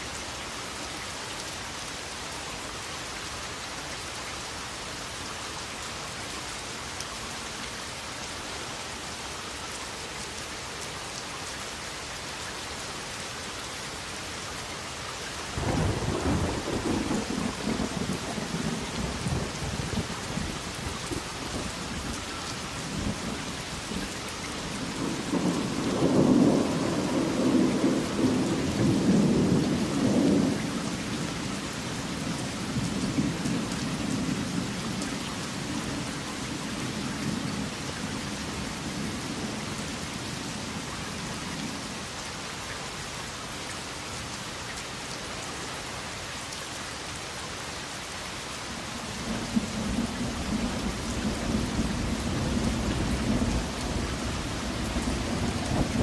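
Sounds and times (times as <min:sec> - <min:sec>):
steady rain falling: 0:00.0 - 0:56.0
thunder rumbling: 0:49.5 - 0:56.0.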